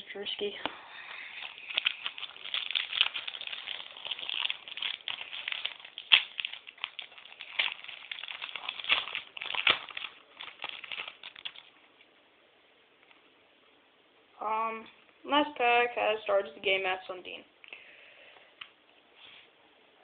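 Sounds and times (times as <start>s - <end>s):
cards rustling: 0.4s - 11.7s
foil wrapper crinkling and tearing: 0.4s - 11.8s.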